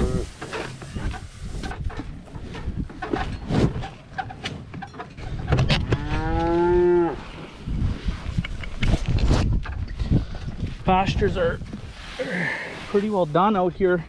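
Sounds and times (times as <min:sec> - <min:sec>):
cow mooing: 0:05.9 - 0:07.2.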